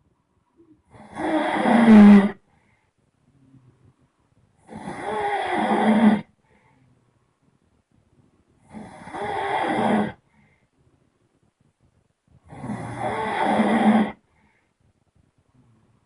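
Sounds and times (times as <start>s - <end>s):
person snoring loudly: 0.9s - 2.4s, 4.6s - 6.3s, 8.7s - 10.2s, 12.5s - 14.2s.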